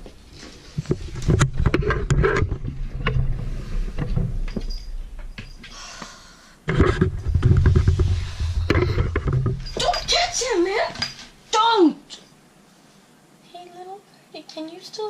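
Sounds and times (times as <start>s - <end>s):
knocks and clicks: 6.7s - 11.3s
close rustling: 6.8s - 11.6s
low rumble: 7.1s - 9.8s.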